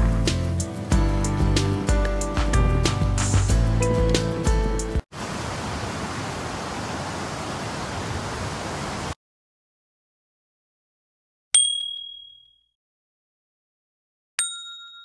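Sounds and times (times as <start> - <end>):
high clear ding: 11.6 - 12.7, 14.4 - 15.0.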